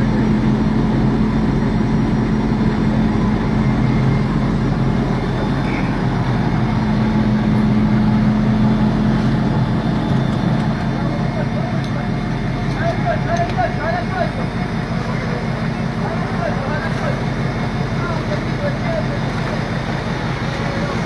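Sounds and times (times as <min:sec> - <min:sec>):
boat engine humming: 0:00.0 - 0:21.0.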